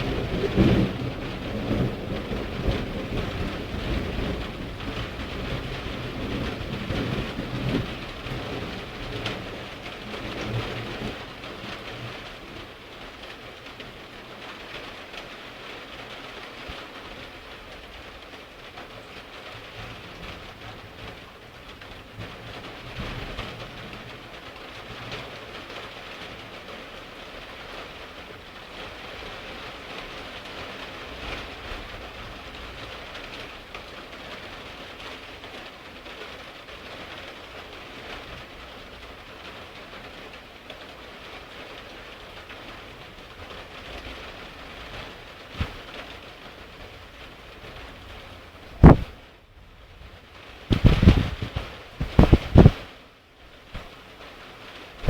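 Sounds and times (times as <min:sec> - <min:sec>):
low thunder rumbles: 0:00.0 - 0:12.2, 0:48.7 - 0:49.2, 0:50.7 - 0:52.9
steady rain: 0:00.0 - 0:55.0.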